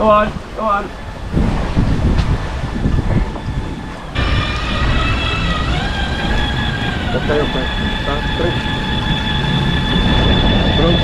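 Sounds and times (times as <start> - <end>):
wind on microphone: 0.0 - 11.0
electric motor whine: 4.1 - 11.0.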